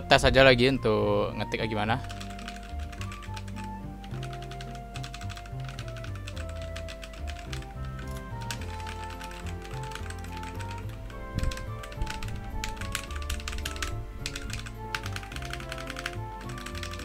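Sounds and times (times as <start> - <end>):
background music: 0.0 - 17.0
mechanical keyboard typing: 2.0 - 17.0.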